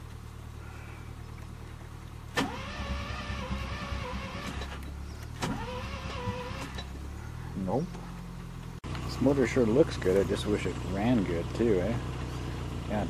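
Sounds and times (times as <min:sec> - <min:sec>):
steady low hum: 0:00.0 - 0:13.0
starter motor cranking engine: 0:02.3 - 0:07.1.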